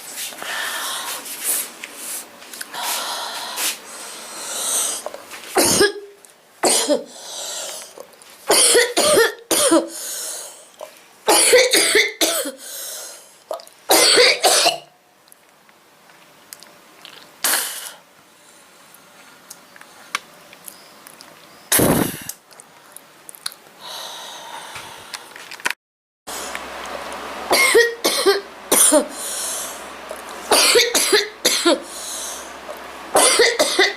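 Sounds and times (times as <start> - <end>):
woman coughing: 5.6 - 7.1, 8.5 - 10.0, 11.3 - 12.6, 13.9 - 14.9, 27.5 - 29.2, 30.5 - 31.9, 33.2 - 33.9.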